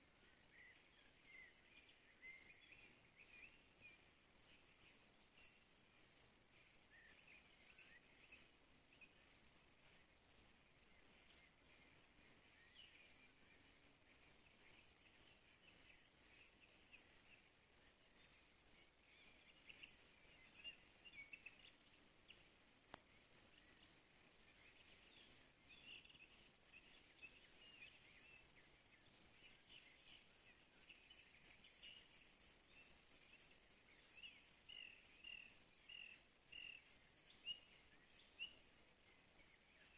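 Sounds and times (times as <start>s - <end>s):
crickets chirping: 0.1s - 39.9s.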